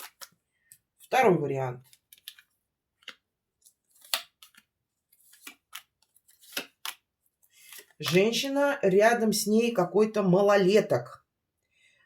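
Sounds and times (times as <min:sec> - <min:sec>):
cards snapping and sliding: 0:00.0 - 0:00.4, 0:01.8 - 0:08.2.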